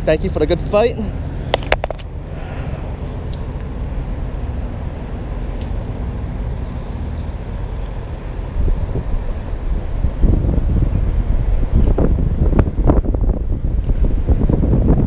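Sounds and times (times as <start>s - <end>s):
wind rumble on microphone: 0.0s - 15.0s.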